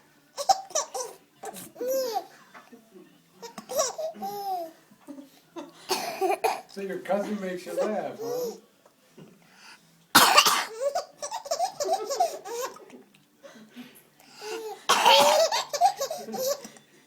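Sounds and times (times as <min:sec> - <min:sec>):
baby giggling: 0:01.8 - 0:02.3, 0:03.4 - 0:04.7, 0:10.7 - 0:12.9, 0:14.4 - 0:16.8
pretend coughs: 0:05.9 - 0:06.7, 0:10.2 - 0:11.0, 0:14.4 - 0:16.8.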